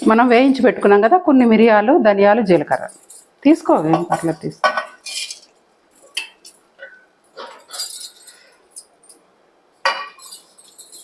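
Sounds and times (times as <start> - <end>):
kitchen utensils clinking: 2.5 - 11.0.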